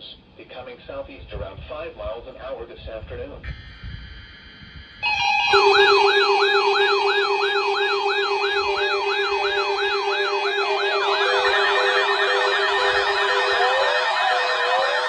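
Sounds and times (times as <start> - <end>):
electronic siren yelping: 3.5 - 15.0
siren wailing: 3.5 - 15.0.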